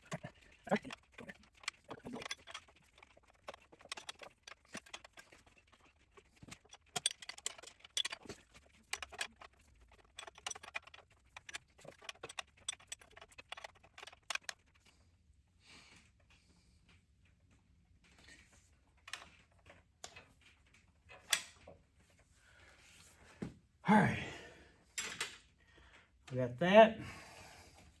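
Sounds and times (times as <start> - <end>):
wrench clicking on metal nut: 6.5 - 14.6.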